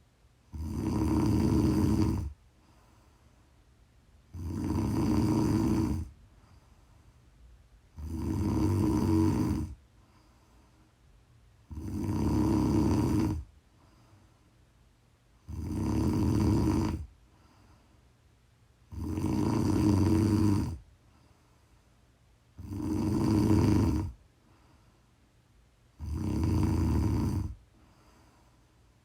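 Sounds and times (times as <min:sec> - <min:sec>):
person snoring: 0:00.5 - 0:02.4, 0:04.3 - 0:06.2, 0:08.0 - 0:09.8, 0:11.7 - 0:13.5, 0:15.4 - 0:17.1, 0:18.9 - 0:20.8, 0:22.6 - 0:24.2, 0:26.0 - 0:28.3.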